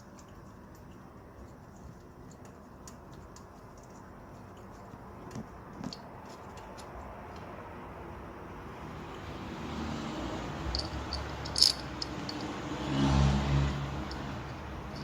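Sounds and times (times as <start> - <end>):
parts clicking and tapping: 10.7 - 12.6.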